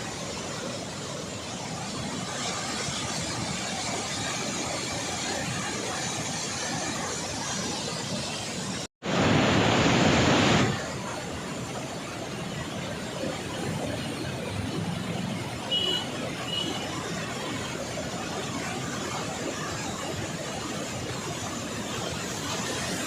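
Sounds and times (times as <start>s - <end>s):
water rushing from spillway: 0.0s - 23.0s.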